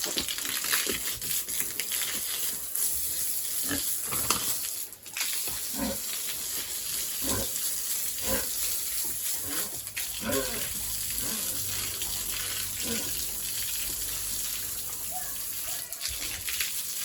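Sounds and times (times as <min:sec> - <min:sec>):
pigs grunting: 0:05.7 - 0:06.2, 0:07.1 - 0:16.4.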